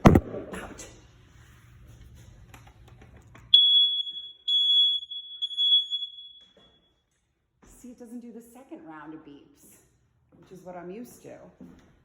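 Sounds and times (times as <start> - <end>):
smoke detector alarm beeps: 3.5 - 7.0.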